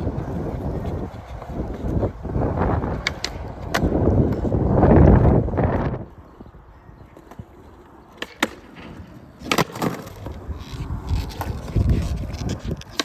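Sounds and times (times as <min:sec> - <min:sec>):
skateboard clacking on ground: 0:00.0 - 0:13.0
skateboard wheels rolling: 0:00.0 - 0:13.0.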